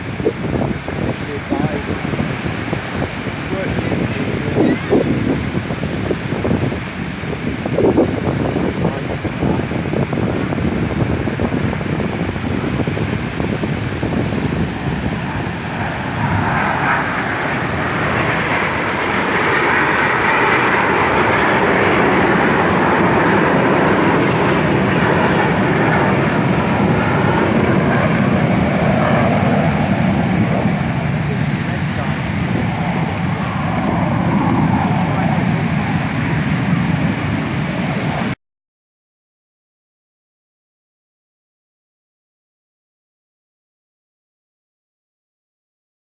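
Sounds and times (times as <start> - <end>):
aircraft flying overhead: 0.0 - 38.4
wind buffeting microphone: 0.0 - 38.4.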